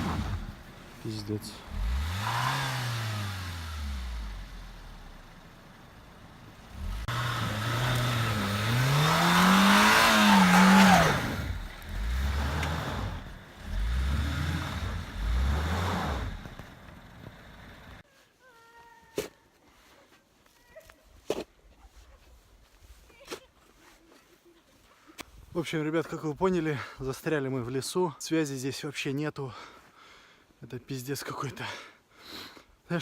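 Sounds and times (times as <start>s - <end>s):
car engine revving hard: 0.0s - 0.7s, 1.5s - 5.0s, 6.7s - 16.6s.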